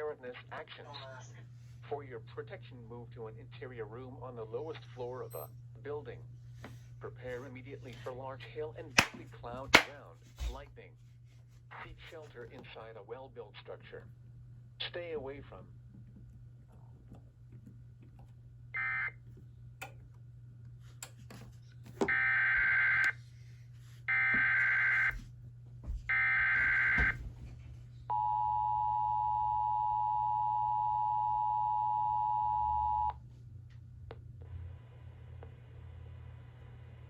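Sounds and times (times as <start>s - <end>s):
low steady hum: 0.0s - 37.0s.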